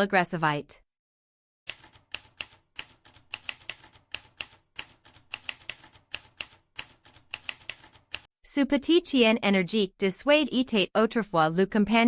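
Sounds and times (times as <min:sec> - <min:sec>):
typewriter keys clicking: 0:01.7 - 0:08.3.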